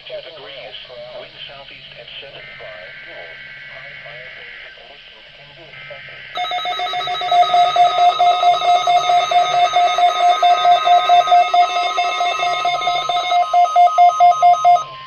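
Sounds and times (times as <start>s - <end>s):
rapidly pulsing electronic beep: 6.4s - 15.0s
steady warning alarm tone: 6.4s - 15.0s.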